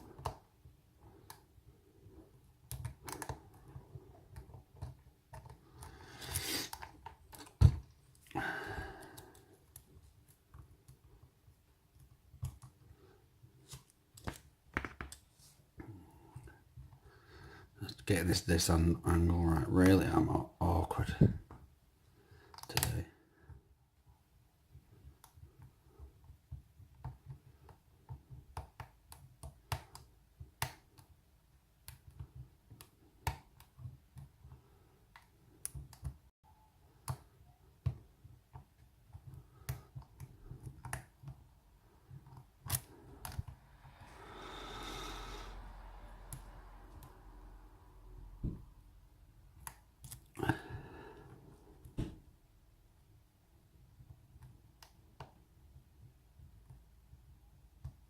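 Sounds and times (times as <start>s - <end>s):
lock pick clicking and scraping: 42.2s - 43.6s.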